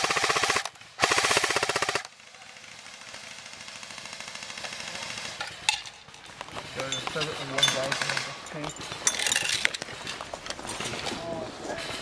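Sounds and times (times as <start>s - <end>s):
airsoft rifle firing full auto: 0.0s - 5.4s.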